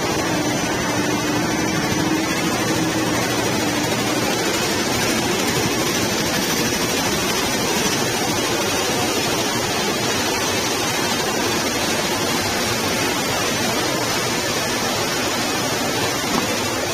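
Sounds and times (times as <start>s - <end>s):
steady machinery rush: 0.0s - 16.9s.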